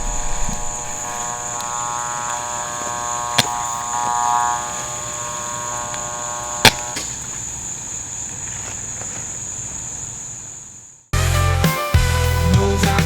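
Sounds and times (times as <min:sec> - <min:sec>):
vacuum cleaner motor whine: 0:00.0 - 0:08.8.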